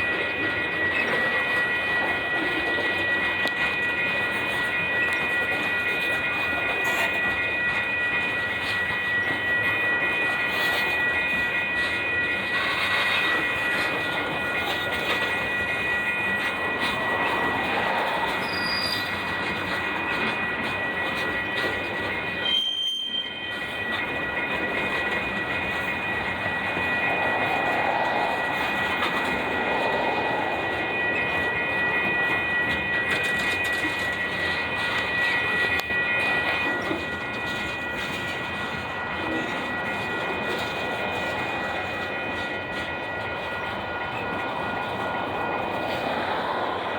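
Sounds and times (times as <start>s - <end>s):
steel wheels rumbling on rail: 0.0s - 46.9s
high-pitched wheel squeal: 6.8s - 37.0s.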